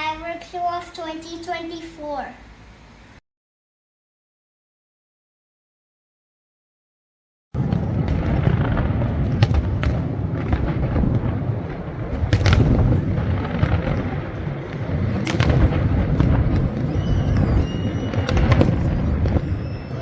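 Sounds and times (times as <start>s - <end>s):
fireworks bangs and crackles: 7.6s - 20.0s
fireworks booming: 7.6s - 20.0s.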